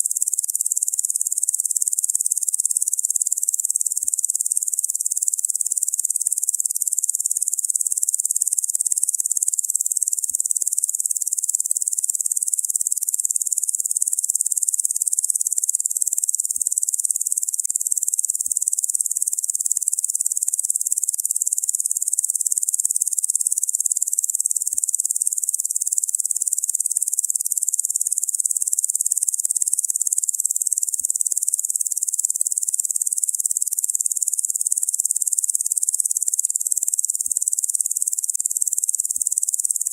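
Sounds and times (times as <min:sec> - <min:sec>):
insect chorus buzzing: 0:00.1 - 0:39.9.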